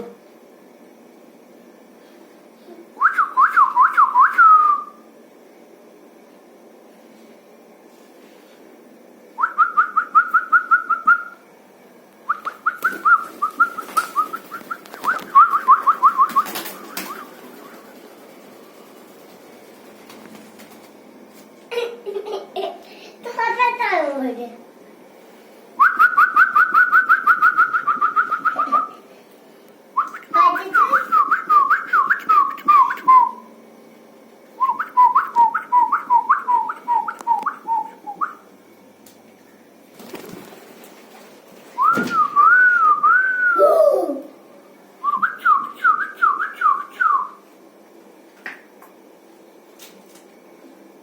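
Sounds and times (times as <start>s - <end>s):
whistled trills and chirps: 12.3s - 18.1s, 25.8s - 29.0s
long wavering whistle: 41.8s - 43.7s.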